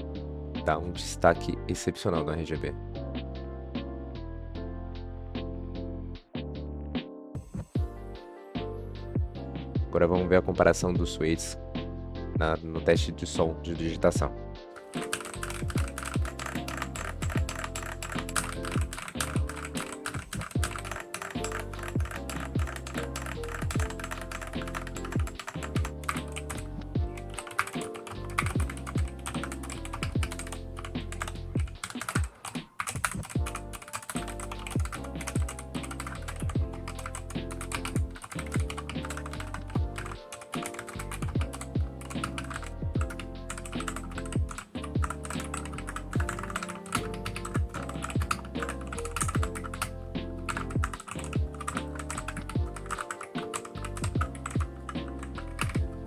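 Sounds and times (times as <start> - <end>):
background music: 0.0 - 56.0
mechanical keyboard typing: 14.8 - 49.9, 50.5 - 55.8.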